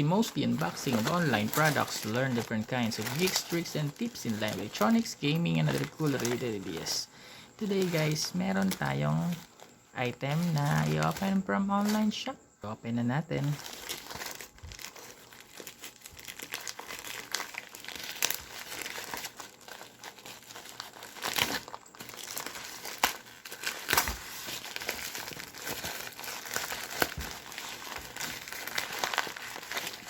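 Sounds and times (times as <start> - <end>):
packaging tearing: 0.0 - 7.0, 13.5 - 30.0
packaging crinkling: 0.0 - 12.2, 13.3 - 30.0.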